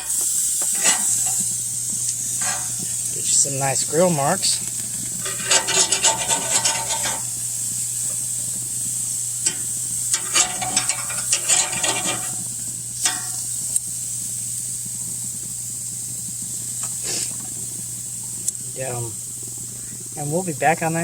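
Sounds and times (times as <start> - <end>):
utensil scraping grill grate: 0.0 - 8.3, 9.4 - 13.5
chicken sizzling on a grill: 0.0 - 21.0.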